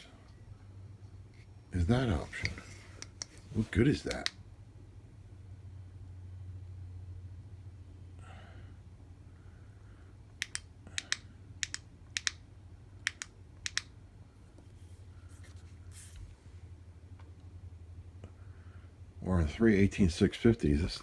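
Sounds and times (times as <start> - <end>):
low steady hum: 0.0 - 21.0
flashlight switch clicking: 10.4 - 12.4, 13.0 - 13.9.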